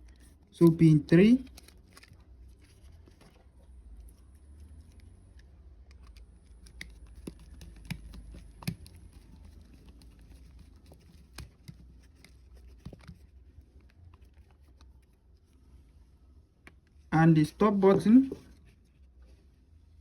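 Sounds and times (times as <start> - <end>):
wire clicks and rustles: 1.4 - 15.6.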